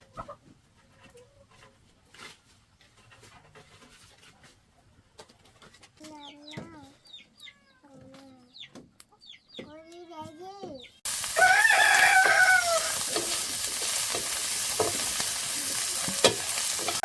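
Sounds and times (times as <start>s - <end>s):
chickens calling: 0.0s - 1.6s, 6.3s - 9.9s, 10.7s - 17.0s.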